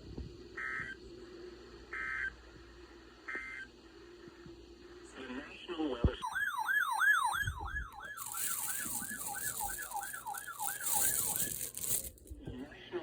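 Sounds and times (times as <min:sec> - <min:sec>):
electronic siren yelping: 0:06.2 - 0:09.1.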